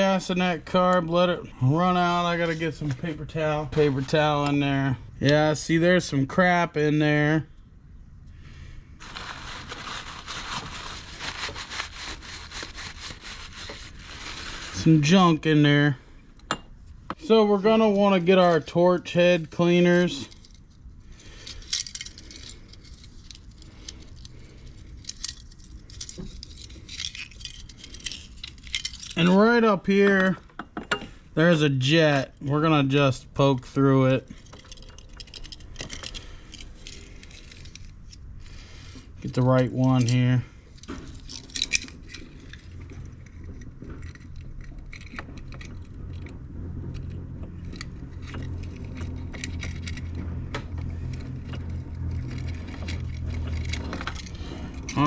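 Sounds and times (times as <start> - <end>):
steady low hum: 0.0 - 55.0
small metal wires jingling: 19.4 - 29.6, 34.3 - 38.1.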